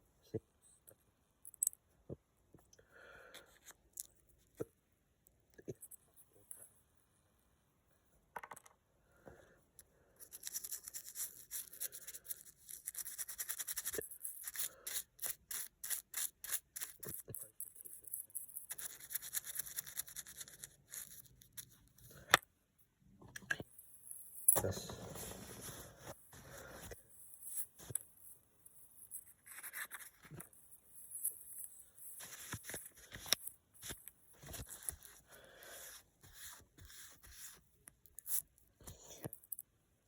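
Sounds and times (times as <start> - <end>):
brush scrubbing a coin: 10.2 - 22.1, 25.1 - 38.6.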